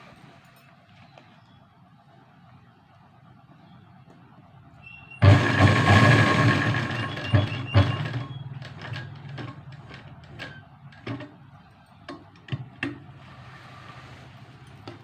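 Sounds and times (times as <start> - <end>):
sewing machine clicking and knocking: 5.2 - 11.4.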